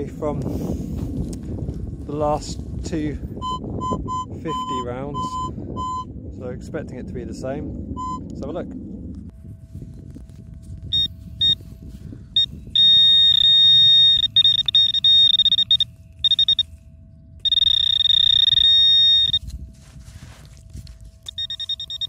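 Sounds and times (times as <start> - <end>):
high-pitched detector beeps: 3.4 - 6.2, 8.0 - 8.3, 10.9 - 16.8, 17.4 - 19.6, 21.2 - 22.0
faint steady hum: 9.0 - 22.0
soil rustling: 17.4 - 22.0.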